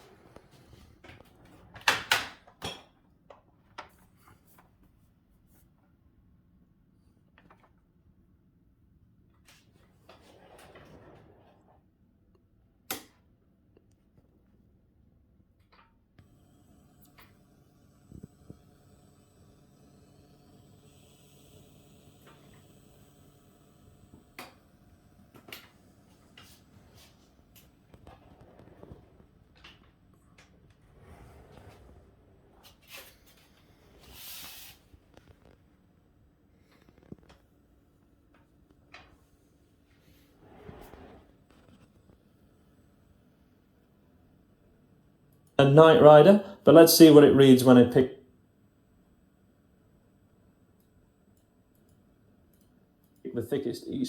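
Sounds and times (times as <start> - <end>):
speaker hiss and hum: 53.3 - 54.0.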